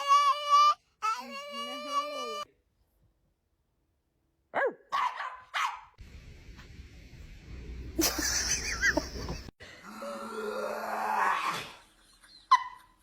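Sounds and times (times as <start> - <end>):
dog barking: 4.5 - 6.0.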